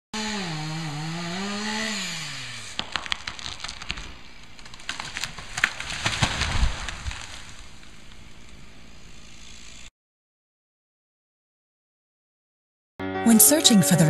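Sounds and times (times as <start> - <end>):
chainsaw running at high speed: 0.2 - 2.8, 9.0 - 9.9
wood cracking and snapping: 2.8 - 8.3.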